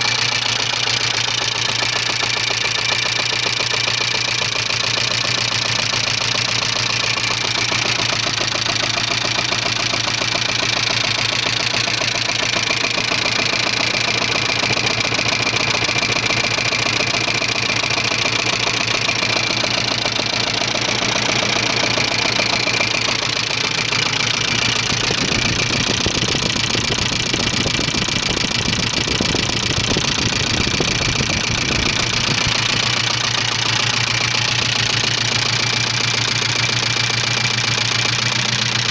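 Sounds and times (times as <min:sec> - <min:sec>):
car engine running with knock: 0:00.0 - 0:38.9
deeper rumble: 0:19.0 - 0:35.2.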